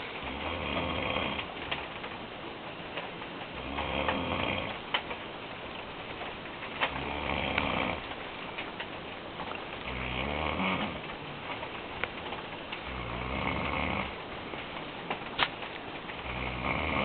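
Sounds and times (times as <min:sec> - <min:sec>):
man snoring: 0:00.2 - 0:01.5, 0:03.6 - 0:04.8, 0:07.0 - 0:08.0, 0:09.9 - 0:11.0, 0:12.9 - 0:14.2, 0:16.2 - 0:17.0.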